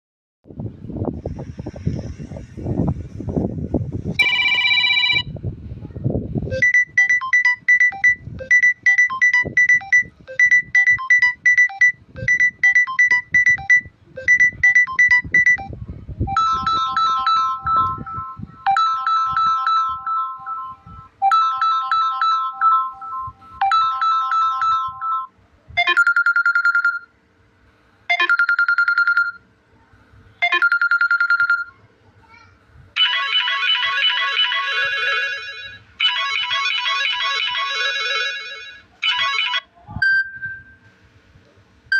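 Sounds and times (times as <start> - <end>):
phone ringtone melodies: 4.2 - 5.3, 6.5 - 27.1, 28.1 - 29.4, 30.4 - 31.8, 33.0 - 40.8.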